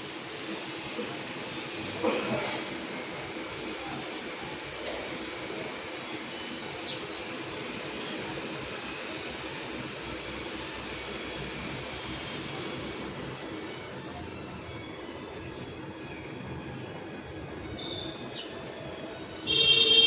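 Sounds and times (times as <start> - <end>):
washing machine motor whine: 0.0 - 20.0.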